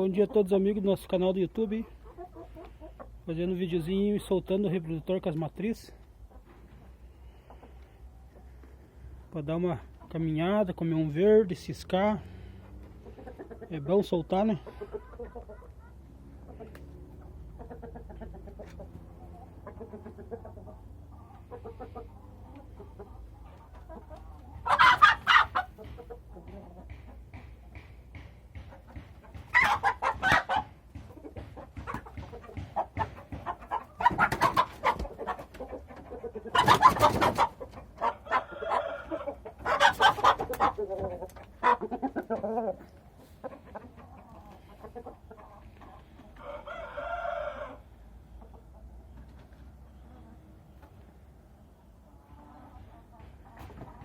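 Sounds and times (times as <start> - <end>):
chickens clucking: 0.0 - 54.0
loud chicken outbursts: 24.7 - 25.6.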